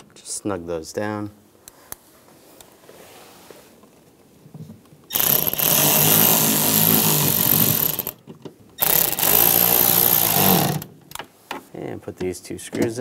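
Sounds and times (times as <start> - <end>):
electric drill spinning: 5.1 - 8.2, 8.8 - 10.9.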